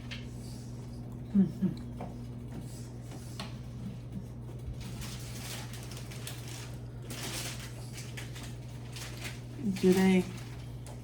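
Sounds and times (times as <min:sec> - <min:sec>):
steady low hum: 0:00.0 - 0:11.0
crackly rustling: 0:03.4 - 0:11.0.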